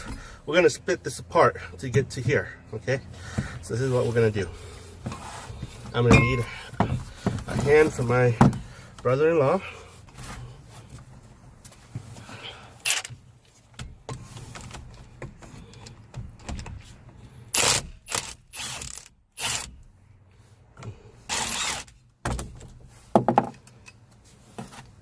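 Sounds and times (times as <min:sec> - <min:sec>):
metal parts and tools clanking: 0:05.9 - 0:08.0.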